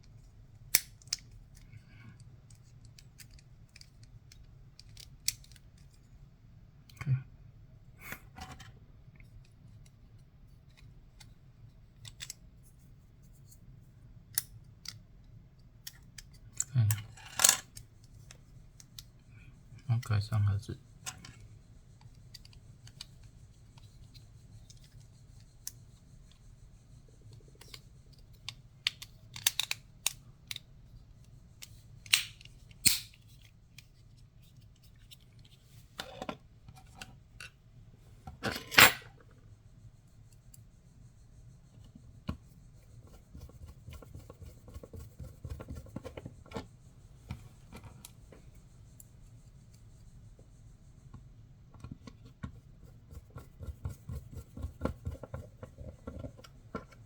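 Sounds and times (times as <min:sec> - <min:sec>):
lock parts clicking and snapping: 0:28.5 - 0:30.6, 0:31.6 - 0:33.2.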